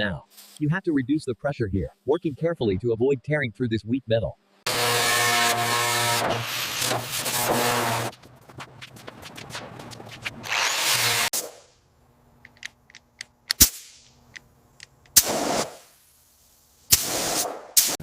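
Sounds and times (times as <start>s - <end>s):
compressed air hissing bursts: 15.1s - 18.0s.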